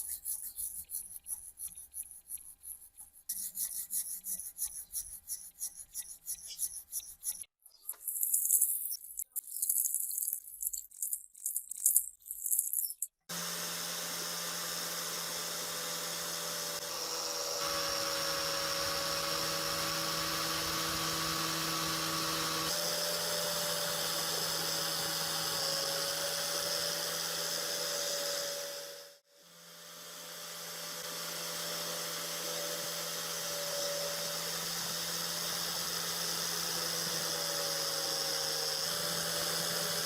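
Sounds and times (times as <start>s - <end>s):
scratchy rubbing on rusty metal: 0.0s - 10.6s
electric rotary tool whining: 13.3s - 40.0s.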